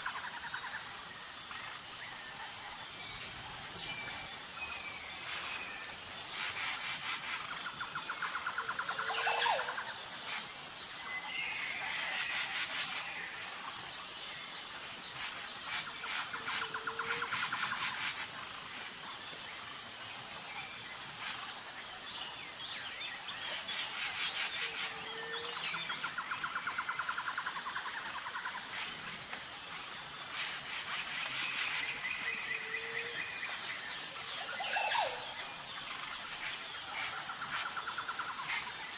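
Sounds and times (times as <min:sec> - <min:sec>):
bird calls and trills: 0:00.0 - 0:38.9
pulsing insect drone: 0:00.0 - 0:38.9.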